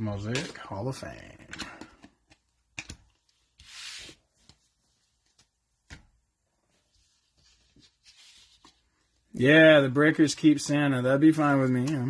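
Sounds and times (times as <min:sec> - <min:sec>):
cards sliding swish: 0:03.5 - 0:04.4.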